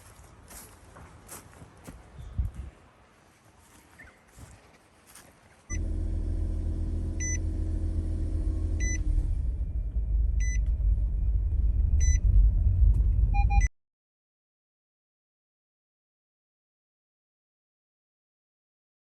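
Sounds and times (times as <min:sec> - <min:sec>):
low rumble: 0:05.7 - 0:13.7
short electronic beeps: 0:07.2 - 0:07.4, 0:08.8 - 0:09.0, 0:10.4 - 0:10.6, 0:12.0 - 0:12.3, 0:13.3 - 0:13.7.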